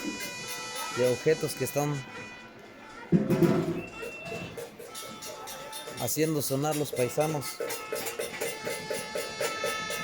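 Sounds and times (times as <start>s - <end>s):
whistles: 3.6s - 4.7s.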